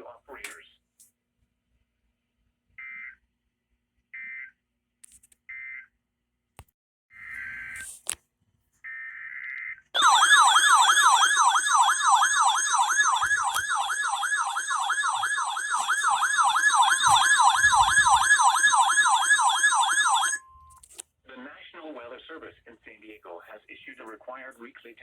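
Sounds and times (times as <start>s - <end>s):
digital header tones: 10.0s - 20.4s
wailing alert tone: 10.0s - 20.4s.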